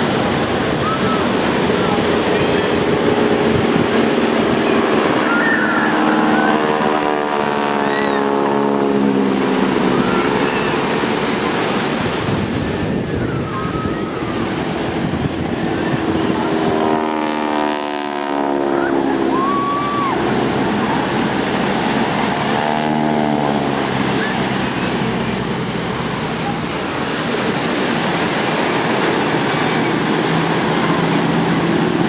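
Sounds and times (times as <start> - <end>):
propeller planes flying past: 0.0 - 32.0
surf: 0.0 - 32.0
wind: 0.0 - 32.0.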